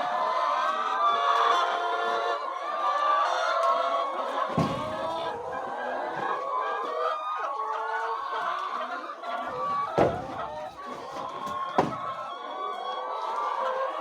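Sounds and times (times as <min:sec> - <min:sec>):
hens clucking: 0:00.0 - 0:14.0
sharp knocks: 0:04.5 - 0:05.2, 0:09.8 - 0:10.5, 0:11.7 - 0:12.2.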